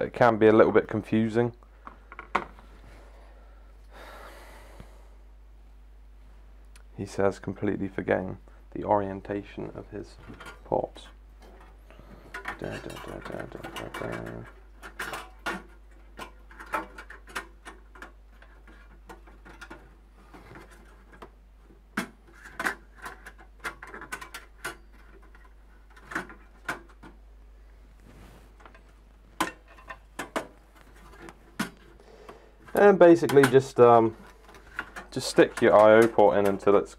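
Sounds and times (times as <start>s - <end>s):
metal computer parts clicking: 10.4s - 19.9s, 22.4s - 27.2s, 32.7s - 36.9s.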